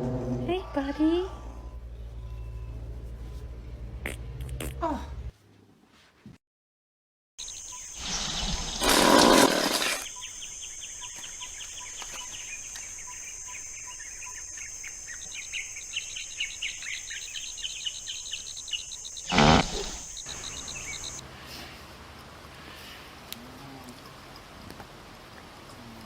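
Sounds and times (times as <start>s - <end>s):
birds chirping: 0.5s - 4.7s, 7.4s - 21.2s
high insect drone: 12.3s - 21.2s.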